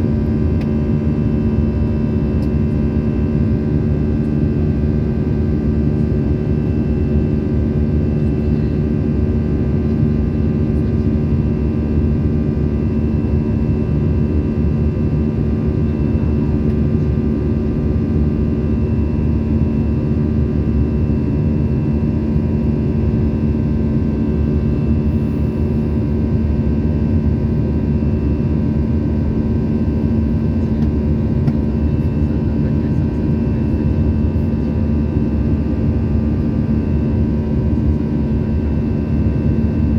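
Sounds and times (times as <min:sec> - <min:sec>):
airliner cabin drone: 0:00.0 - 0:39.9
constant tonal hum: 0:22.4 - 0:39.9.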